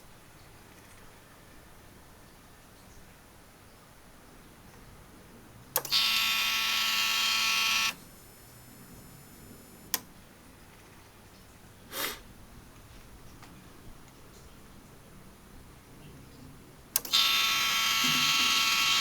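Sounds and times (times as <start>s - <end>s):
fuel pump buzzing whine: 5.8s - 10.0s, 17.0s - 19.0s.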